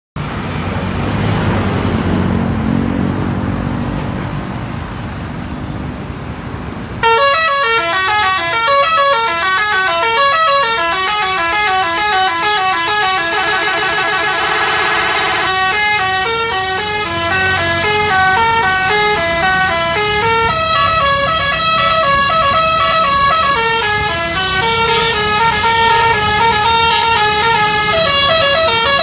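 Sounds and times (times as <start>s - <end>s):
multi-tone musical bus horn: 7.0s - 29.0s
vehicle engine running: 8.0s - 29.0s.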